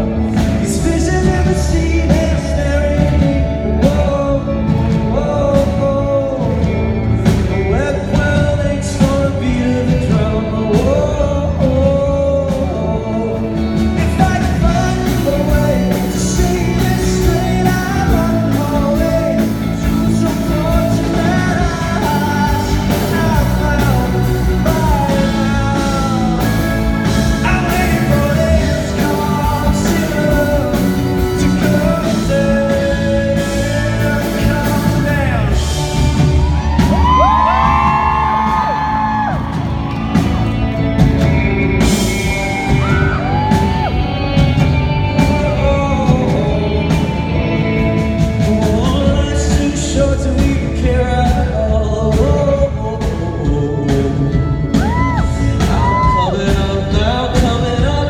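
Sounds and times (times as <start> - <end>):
live rock band playing: 0.0 - 58.0
man singing: 0.0 - 58.0
crowd yelling and whooping: 34.1 - 48.2, 54.4 - 57.3.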